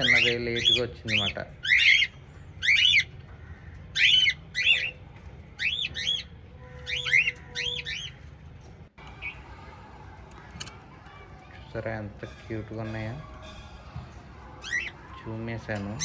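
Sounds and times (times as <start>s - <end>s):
cockatiels chirping: 0.0s - 8.3s, 12.3s - 16.0s.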